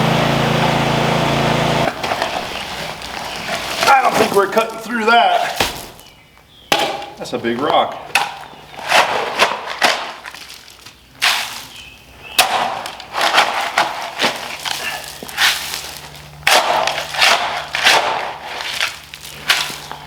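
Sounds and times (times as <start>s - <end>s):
digging tool striking rocky soil: 16.5s - 20.0s.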